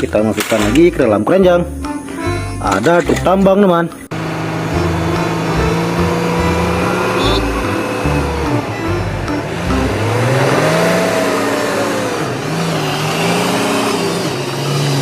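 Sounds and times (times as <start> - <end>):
engine revving: 4.1 - 15.0.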